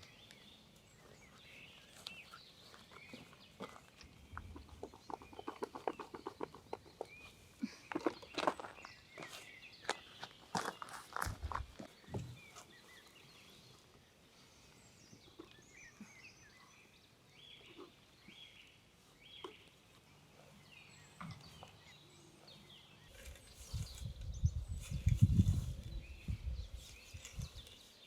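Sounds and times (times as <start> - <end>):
bird calls: 0.0 - 13.8.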